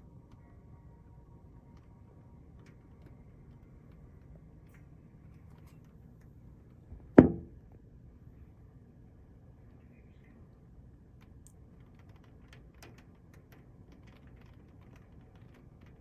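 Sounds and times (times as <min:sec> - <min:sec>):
faint low background noise: 0:00.0 - 0:16.0
sharp thump: 0:07.2 - 0:07.5.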